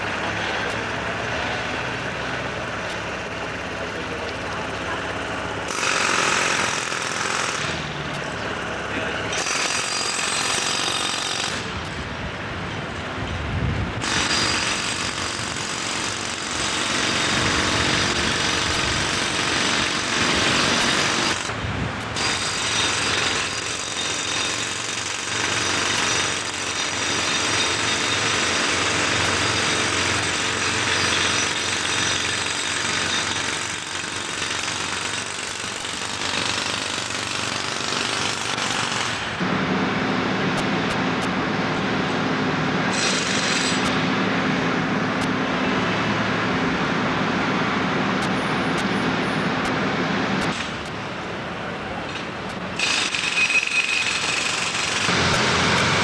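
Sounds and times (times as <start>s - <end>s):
breaker hammering concrete: 5.6s - 8.3s, 9.0s - 12.0s, 14.0s - 41.4s, 42.2s - 45.4s, 52.1s - 56.0s.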